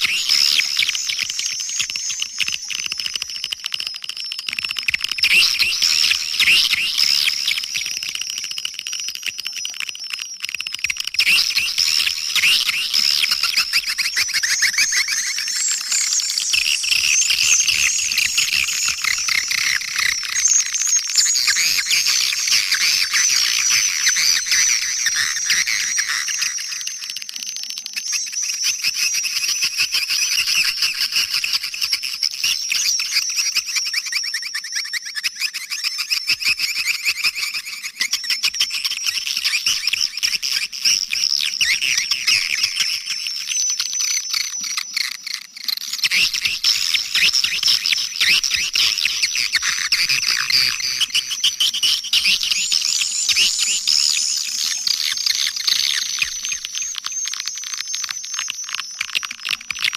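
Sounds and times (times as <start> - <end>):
swiftlet chirps and twitters: 39.2 - 59.5.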